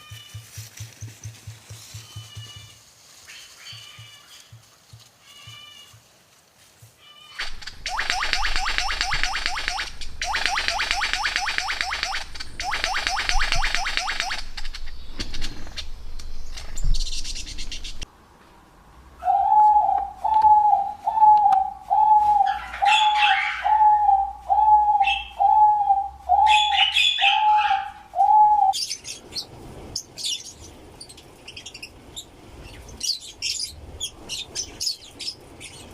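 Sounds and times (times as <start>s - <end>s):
rapid high-pitched chirping: 7.4s - 16.0s
high bird chirps: 7.4s - 18.1s.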